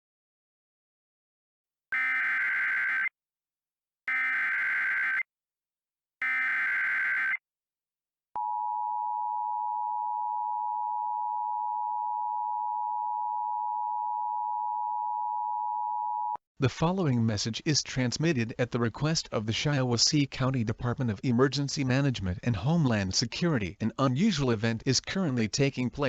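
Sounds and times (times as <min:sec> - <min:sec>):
data tone bursts: 0:02.0 - 0:03.1, 0:06.2 - 0:07.4.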